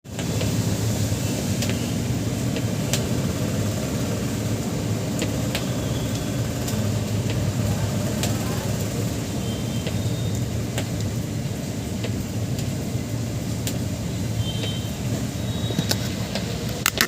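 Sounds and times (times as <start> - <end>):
heavy rain falling: 0.1 - 17.0
drops ticking on a surface: 5.0 - 8.4.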